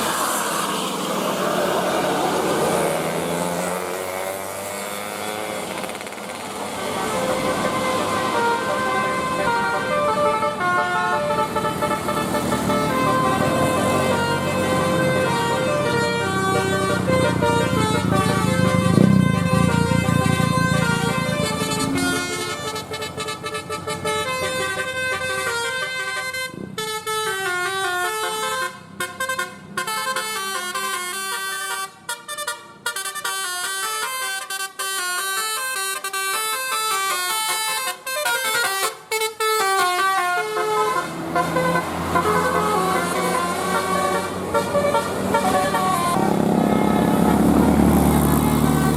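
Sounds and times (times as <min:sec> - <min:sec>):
bus engine running loudly: 0:00.0 - 0:25.7, 0:40.2 - 0:48.9
musical bus horn playing a tune: 0:06.8 - 0:48.9.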